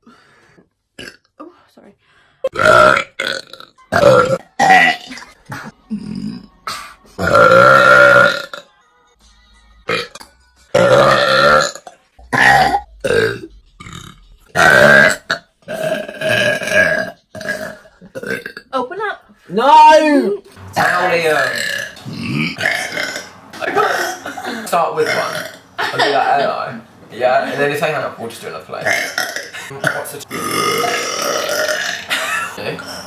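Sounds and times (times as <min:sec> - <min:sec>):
young women burping: 0:02.4 - 0:06.5, 0:07.2 - 0:08.6, 0:21.6 - 0:26.1, 0:30.3 - 0:33.0.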